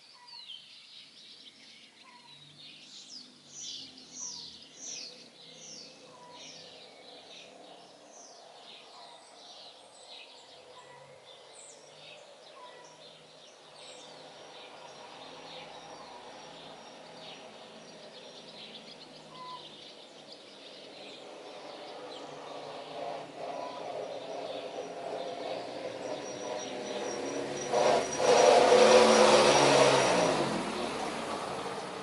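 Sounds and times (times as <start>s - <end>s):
birds chirping: 0.0s - 32.0s
vehicle passing by: 11.2s - 32.0s.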